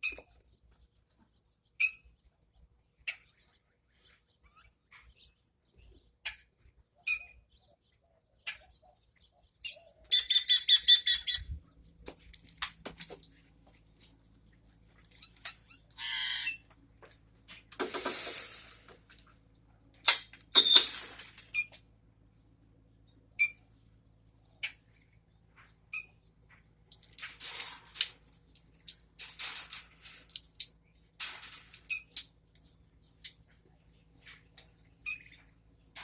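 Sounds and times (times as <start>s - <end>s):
birds squawking: 8.4s - 11.5s, 14.7s - 16.7s, 34.9s - 35.6s.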